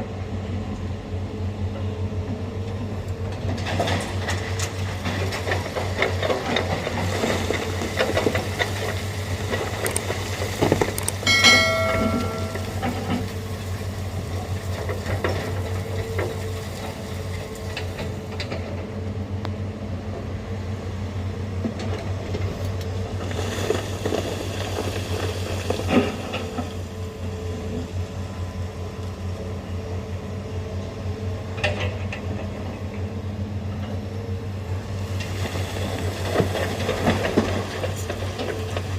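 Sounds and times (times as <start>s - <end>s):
heavy diesel engine droning: 6.4s - 23.3s, 25.4s - 38.9s.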